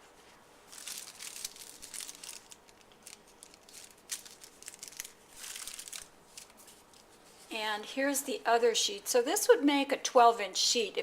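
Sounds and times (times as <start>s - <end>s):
pastry sheets rustling and crackling: 0.0s - 8.6s.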